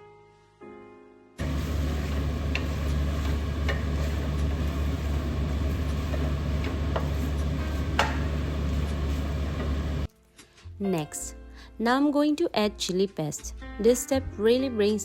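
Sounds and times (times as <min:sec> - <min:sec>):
chicken sizzling in a pan: 0:01.4 - 0:10.1
low hum: 0:01.4 - 0:10.1.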